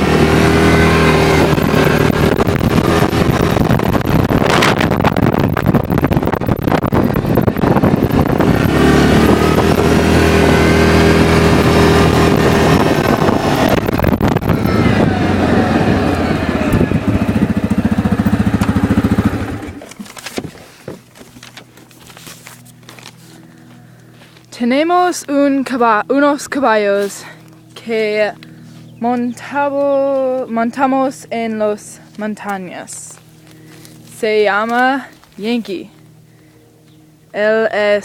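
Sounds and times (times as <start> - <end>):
wind buffeting microphone: 0.0 - 19.8
vehicle engine running: 0.0 - 38.0.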